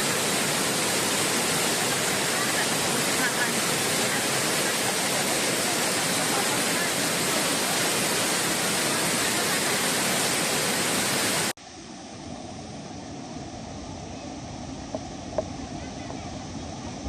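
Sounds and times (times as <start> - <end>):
waterfall rushing: 0.0 - 11.6.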